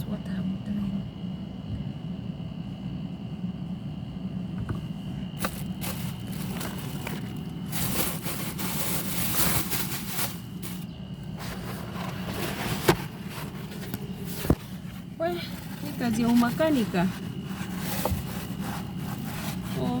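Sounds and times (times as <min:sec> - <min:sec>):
low machine hum: 0:00.0 - 0:20.0
scrubbing and scraping grime: 0:05.4 - 0:20.0.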